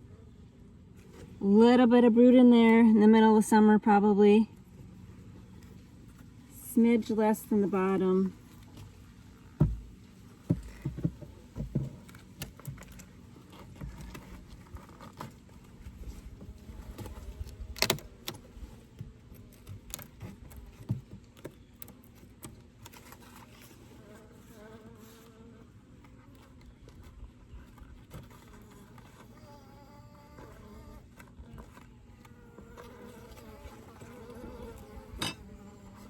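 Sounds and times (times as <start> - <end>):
honeybees buzzing: 28.3 - 36.0.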